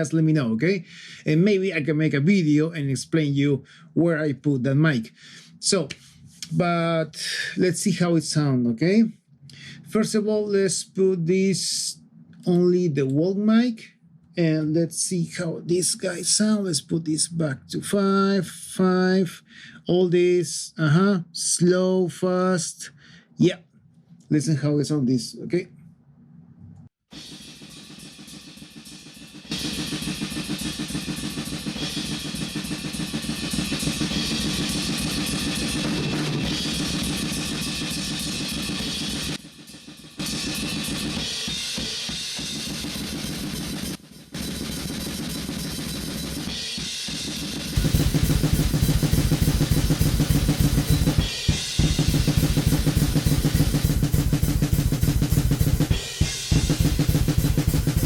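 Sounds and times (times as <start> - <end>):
metal drum kit playing: 27.1 - 58.0
cymbal hits: 27.2 - 58.0.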